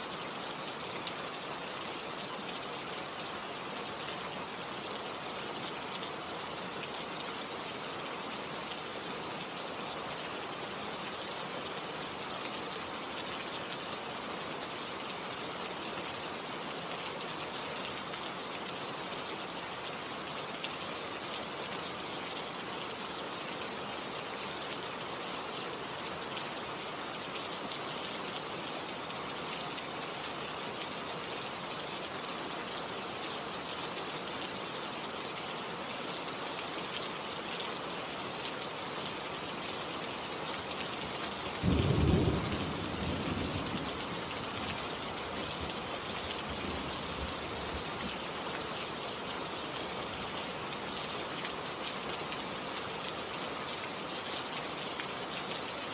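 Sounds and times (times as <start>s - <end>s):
steady rain falling: 0.0s - 55.9s
rumble of thunder: 41.6s - 44.3s.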